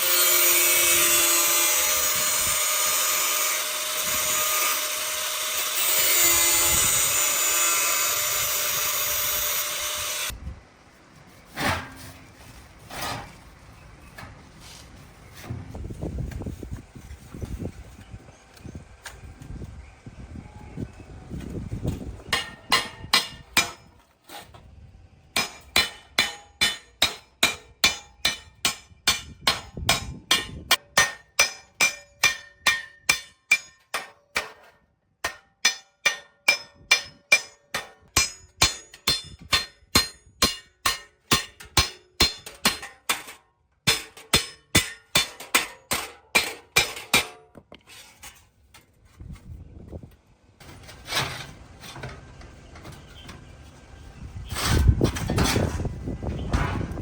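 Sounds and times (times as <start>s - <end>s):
hammer striking metal: 22.3s - 23.9s, 25.4s - 47.5s.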